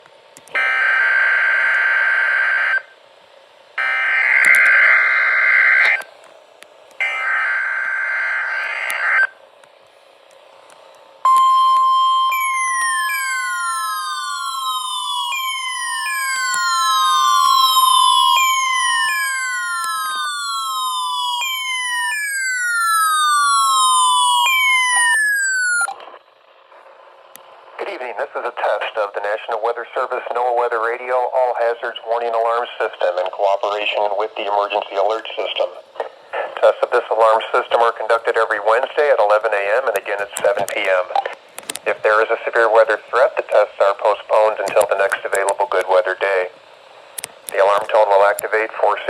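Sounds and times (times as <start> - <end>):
steady electronic alarm tone: 0.6 - 3.0, 3.8 - 6.0, 7.0 - 9.4, 11.2 - 26.0
descending siren-like whistles: 3.8 - 6.0, 7.0 - 9.4, 11.3 - 26.1.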